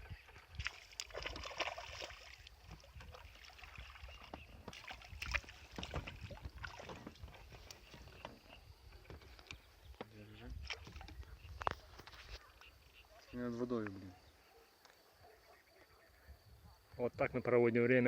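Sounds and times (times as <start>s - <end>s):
water splashing around a boat: 0.0s - 12.4s
knocks and clicks in a boat: 4.0s - 12.7s.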